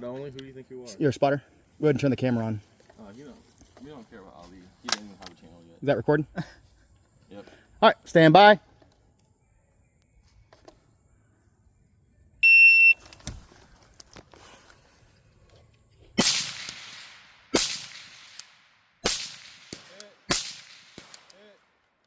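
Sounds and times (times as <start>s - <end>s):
shot timer beep: 12.4s - 13.0s
rifle shots with echo: 16.2s - 21.4s.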